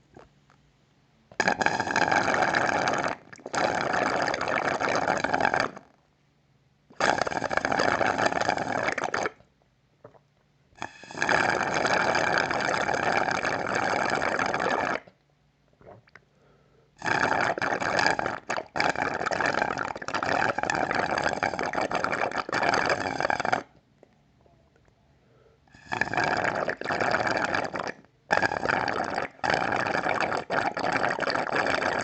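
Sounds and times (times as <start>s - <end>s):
slurping through a straw: 1.4s - 5.9s, 6.9s - 10.2s, 10.8s - 15.2s, 17.0s - 23.8s, 25.8s - 32.0s.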